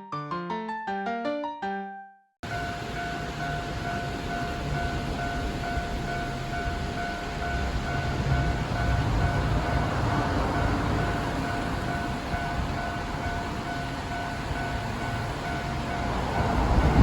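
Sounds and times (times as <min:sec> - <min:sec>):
level crossing warning bell ringing: 0:02.4 - 0:17.0
train rumbling: 0:02.4 - 0:17.0.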